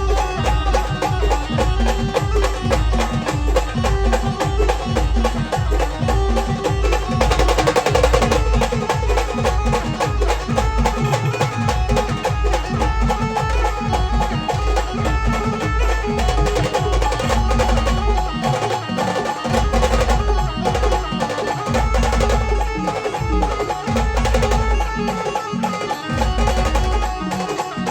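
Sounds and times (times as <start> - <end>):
band playing folk music: 0.0 - 27.9
heavy steady drum beat: 0.0 - 27.9
sustained melody line: 0.0 - 27.9.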